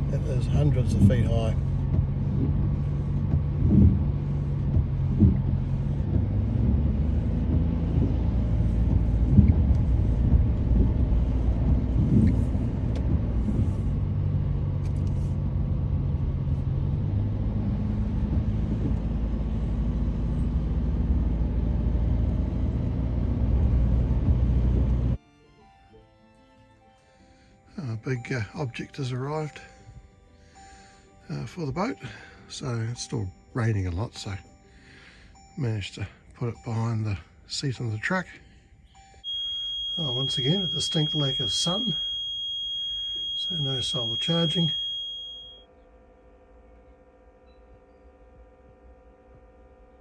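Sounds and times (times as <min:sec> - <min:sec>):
vehicle thumps: 0:00.0 - 0:14.1
road and engine rumble: 0:00.0 - 0:25.2, 0:27.0 - 0:47.4.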